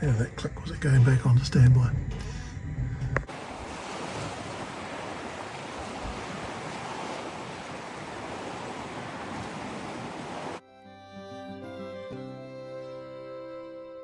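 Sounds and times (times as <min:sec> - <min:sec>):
sea water rushing: 0:03.3 - 0:10.6.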